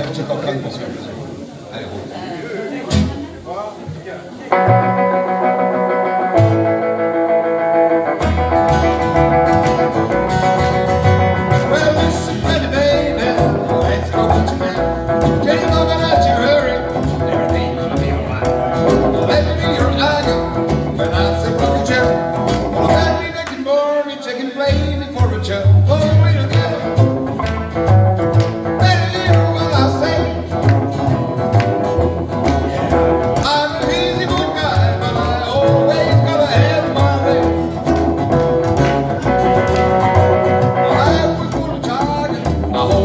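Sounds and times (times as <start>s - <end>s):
guitars: 2.9s - 3.4s, 4.4s - 43.0s
walking bass line: 4.5s - 23.4s, 24.7s - 43.0s
steady beat: 8.2s - 23.3s, 25.7s - 43.0s
person singing: 8.3s - 27.9s, 28.6s - 43.0s.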